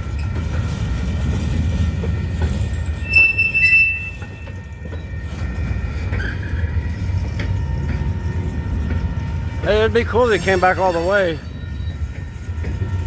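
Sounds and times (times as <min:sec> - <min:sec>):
freight train rumbling: 0:00.0 - 0:13.0
steel wheel squeal: 0:02.8 - 0:07.2, 0:10.0 - 0:13.0.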